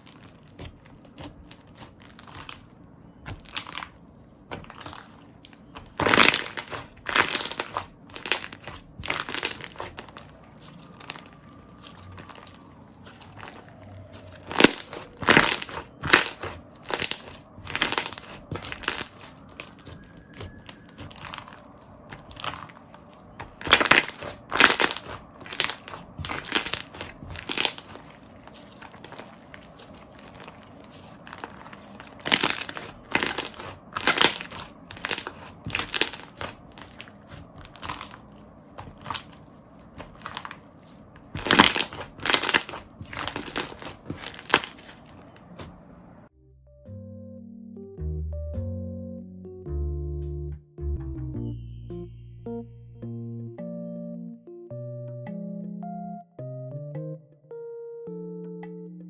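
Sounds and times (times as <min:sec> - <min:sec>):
slime crackling and popping: 0:00.0 - 0:46.1.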